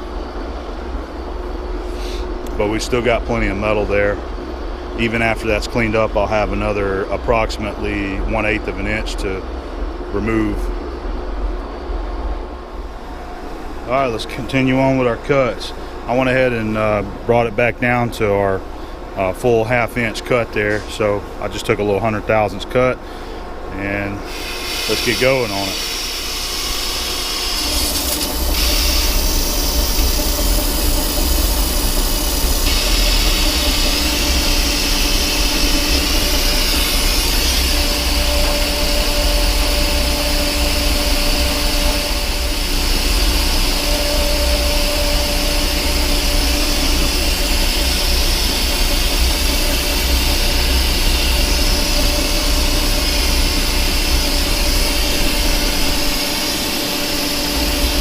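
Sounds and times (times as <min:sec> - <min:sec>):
metal lathe cutting steel: 0:23.9 - 0:58.0.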